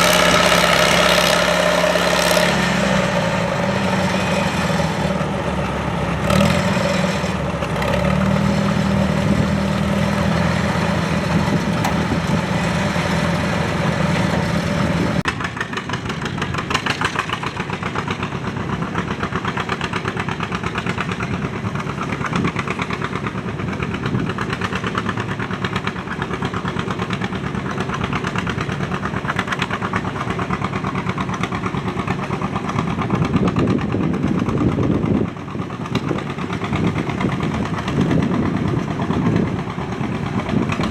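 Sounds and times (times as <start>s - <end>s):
tractor engine running: 0.0s - 40.9s.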